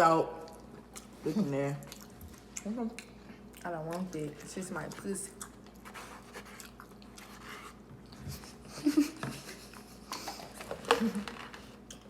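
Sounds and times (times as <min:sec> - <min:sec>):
chewing and mouth noises: 0:00.4 - 0:01.2, 0:01.8 - 0:08.7.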